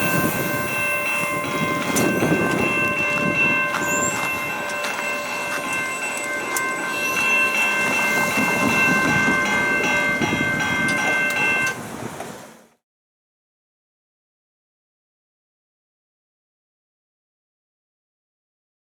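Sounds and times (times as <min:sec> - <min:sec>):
high-pitched ringing tone: 0:00.0 - 0:11.8
train wheels clacking on rails: 0:00.0 - 0:12.5.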